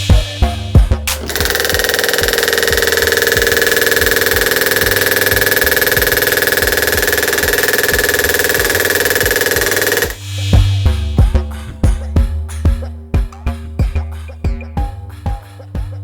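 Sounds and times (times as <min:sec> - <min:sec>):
door alarm buzzing: 0:01.1 - 0:10.2.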